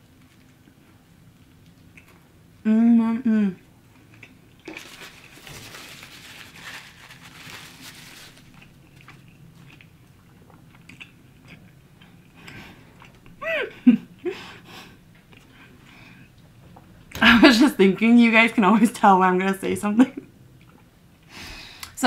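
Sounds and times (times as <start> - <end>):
person chewing crunchy food: 3.9 - 13.4.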